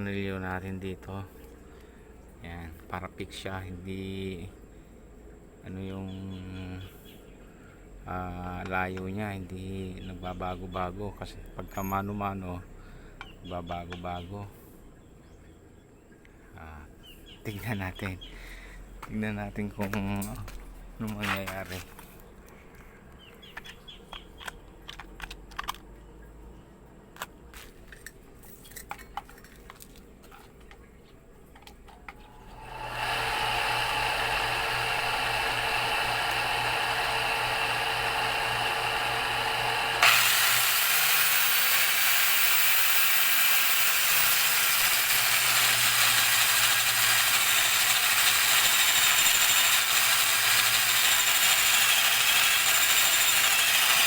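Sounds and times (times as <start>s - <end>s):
electric motor running: 32.3s - 54.0s
harsh power tool whir: 32.3s - 54.0s.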